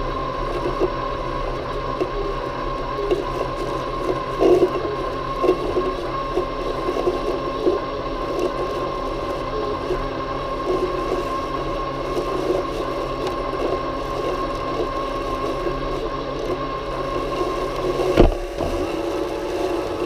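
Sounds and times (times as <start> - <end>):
robotic lawn mower whine: 0.0 - 20.0
knocks and rustles: 18.0 - 19.0.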